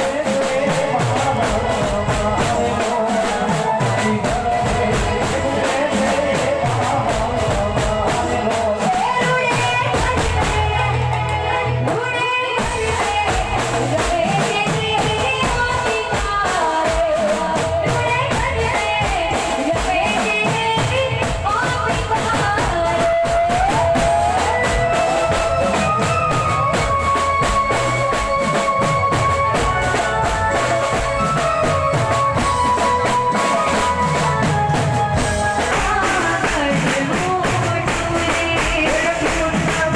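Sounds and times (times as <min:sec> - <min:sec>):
drums and tambourine beat: 0:00.0 - 0:39.9
person singing: 0:00.0 - 0:39.9.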